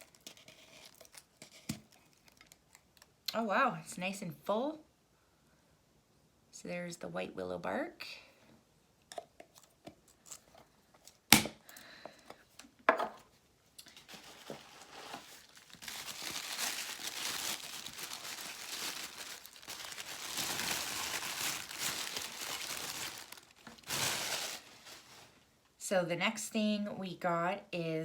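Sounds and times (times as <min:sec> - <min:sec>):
packaging crinkling and rustling: 0:00.0 - 0:03.1, 0:13.8 - 0:25.4.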